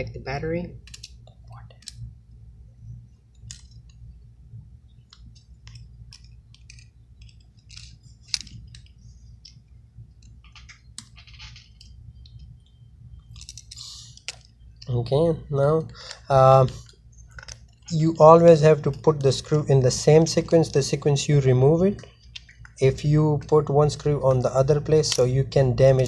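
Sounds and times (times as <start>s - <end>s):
steady low hum: 0.0s - 26.0s
small tools clicking and scraping: 5.7s - 9.6s.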